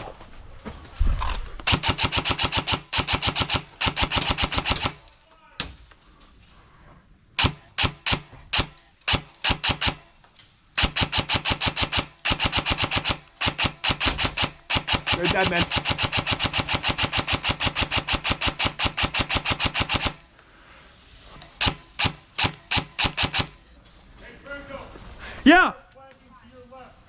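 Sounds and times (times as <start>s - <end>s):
airsoft rifles firing: 1.6s - 5.2s, 7.4s - 10.2s, 10.8s - 20.3s, 21.6s - 23.7s.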